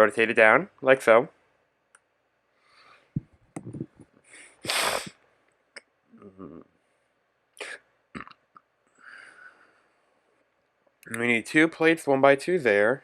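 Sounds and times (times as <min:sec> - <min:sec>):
low throat sounds: 0:03.2 - 0:04.1, 0:06.1 - 0:06.7, 0:07.6 - 0:08.4.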